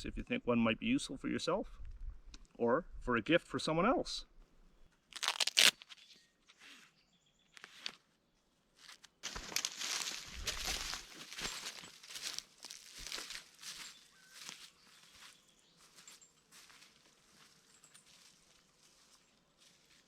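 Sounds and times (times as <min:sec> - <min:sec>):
footsteps walking outdoors: 0:07.5 - 0:20.0
rustling handling noise: 0:08.8 - 0:14.7.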